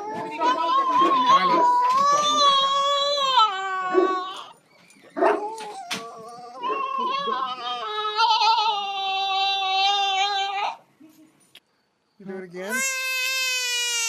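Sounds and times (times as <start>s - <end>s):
dog howling: 0.0s - 10.8s.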